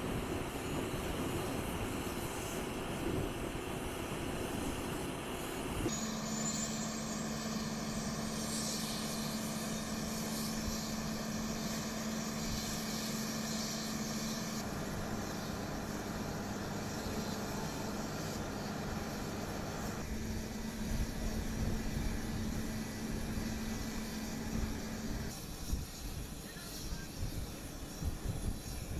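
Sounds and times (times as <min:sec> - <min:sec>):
engine humming steadily: 0:00.0 - 0:28.9.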